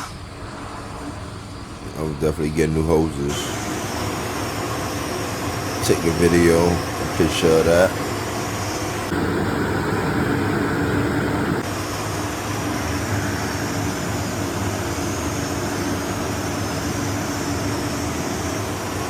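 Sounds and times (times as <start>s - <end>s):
boiler room machinery drone: 0.0s - 19.0s.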